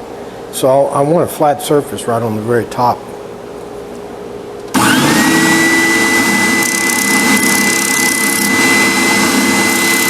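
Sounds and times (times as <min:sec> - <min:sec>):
workshop machine motor whining: 0:04.7 - 0:10.0.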